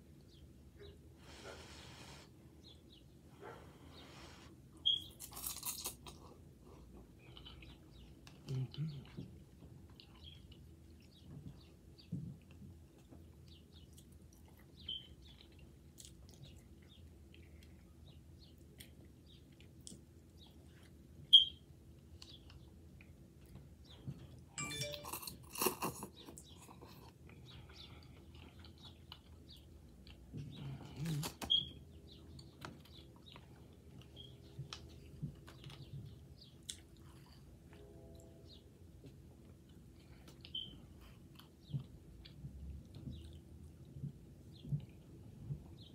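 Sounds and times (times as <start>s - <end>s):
person chewing noodles: 5.0s - 11.2s, 12.4s - 21.2s, 25.2s - 31.5s, 36.5s - 37.4s, 39.5s - 45.1s.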